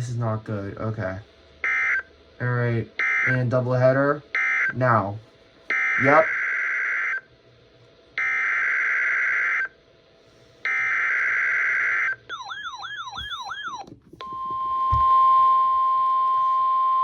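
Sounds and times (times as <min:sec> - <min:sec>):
warbling siren-like alert tone: 0:05.7 - 0:07.2, 0:10.7 - 0:15.8
screeching digital data tones: 0:10.7 - 0:14.6
steady alert tone: 0:12.3 - 0:14.4.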